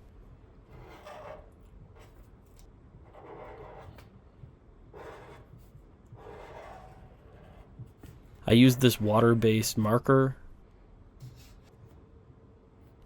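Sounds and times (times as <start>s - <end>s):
pen scratching across surface: 0.7s - 2.3s, 3.0s - 4.1s, 5.0s - 7.8s.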